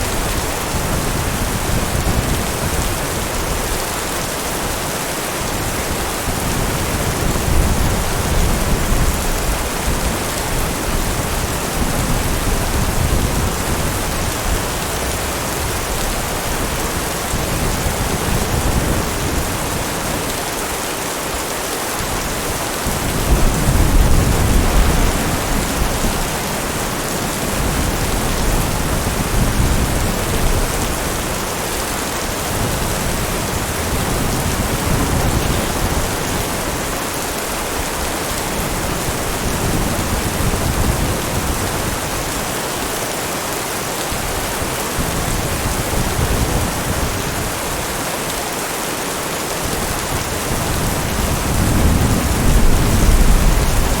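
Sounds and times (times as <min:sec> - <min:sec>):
heavy rain: 0:00.0 - 0:54.0
distant thunder rolling: 0:22.2 - 0:31.5, 0:50.6 - 0:54.0.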